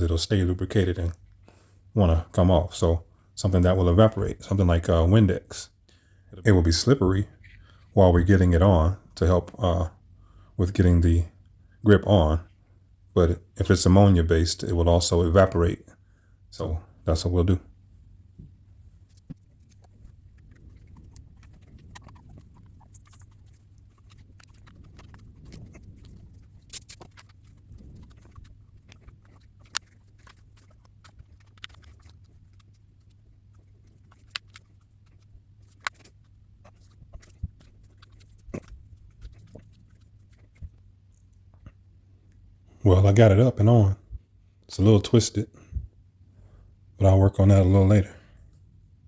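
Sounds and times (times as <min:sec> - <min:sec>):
rubber grip rubbing: 0:18.3 - 0:41.4.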